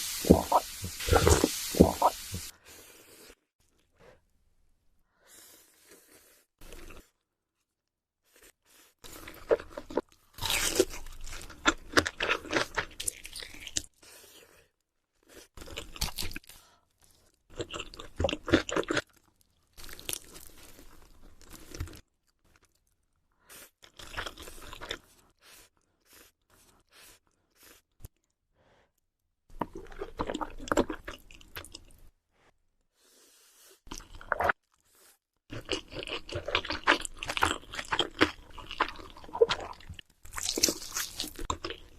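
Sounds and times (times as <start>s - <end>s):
crunching and chewing crisp food: 8.3s - 28.3s, 29.6s - 32.1s, 33.9s - 41.9s.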